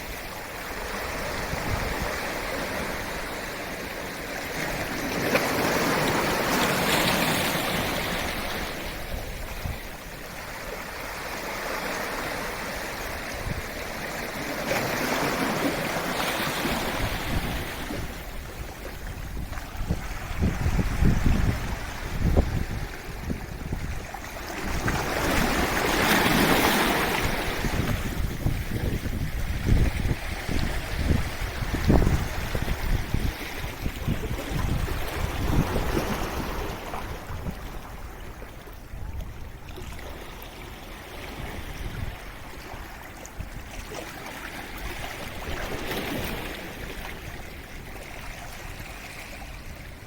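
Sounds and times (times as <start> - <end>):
wind buffeting microphone: 0.0 - 3.8, 16.6 - 44.0
sea waves washing in: 0.0 - 50.0.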